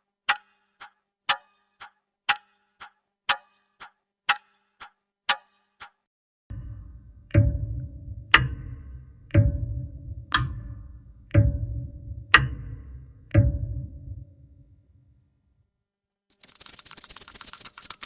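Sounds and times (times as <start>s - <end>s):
clock ticking: 0.3s - 6.0s.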